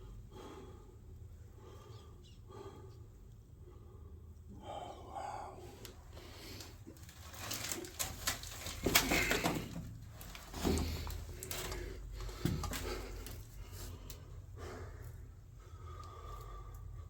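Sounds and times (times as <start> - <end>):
footsteps on wooden boards: 10.5 - 13.2.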